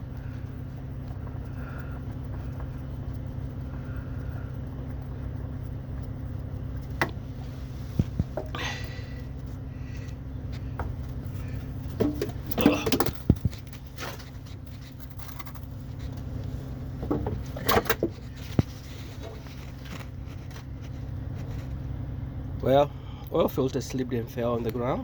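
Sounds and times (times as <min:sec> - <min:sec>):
steady low hum: 0:00.0 - 0:25.0
metal clinks and knocks: 0:11.9 - 0:13.9.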